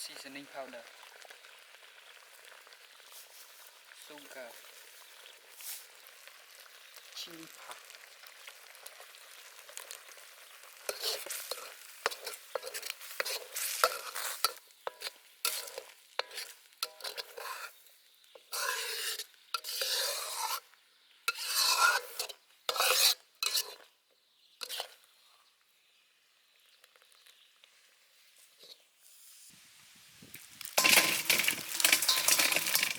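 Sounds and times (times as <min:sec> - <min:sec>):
light sizzle: 0:00.0 - 0:32.9
utensil scraping a pan: 0:10.8 - 0:17.8, 0:18.4 - 0:20.7, 0:21.3 - 0:23.9, 0:24.6 - 0:25.0, 0:30.7 - 0:32.9.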